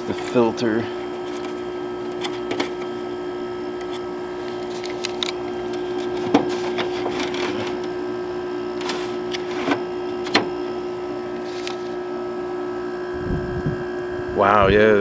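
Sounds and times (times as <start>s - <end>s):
window air conditioner humming: 0.0s - 15.0s
handling clicks and knocks: 3.8s - 8.0s.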